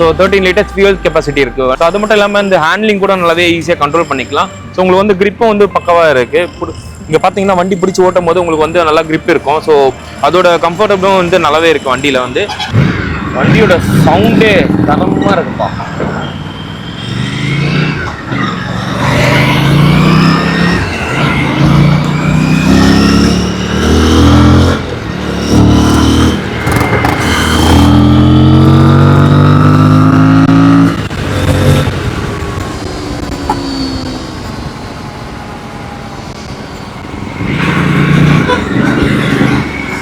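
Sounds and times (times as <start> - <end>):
motorcycle engine accelerating: 18.8 - 34.9.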